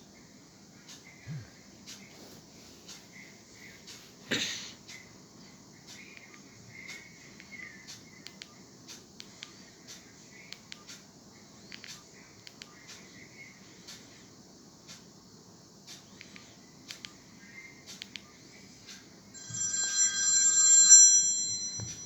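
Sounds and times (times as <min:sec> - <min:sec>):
insect-like chirps and clicks ringtone: 0:19.4 - 0:22.0.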